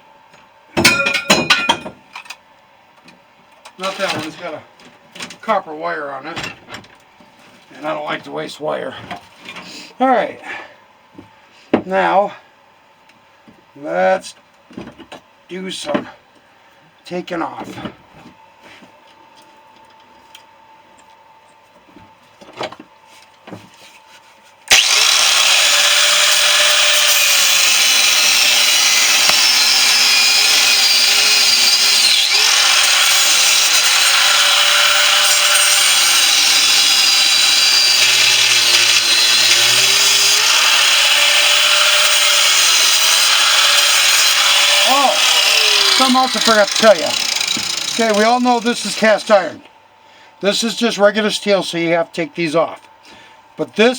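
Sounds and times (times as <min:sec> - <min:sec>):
angle grinder cutting steel: 0:24.7 - 0:49.4.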